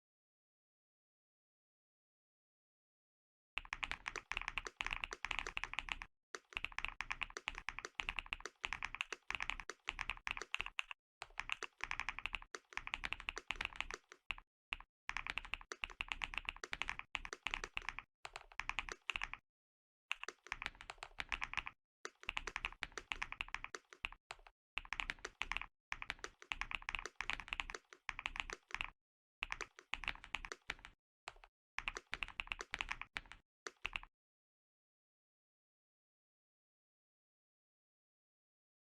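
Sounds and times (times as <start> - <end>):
fast typing on mechanical keyboard: 3.6 - 14.4, 15.1 - 19.4, 20.1 - 34.1.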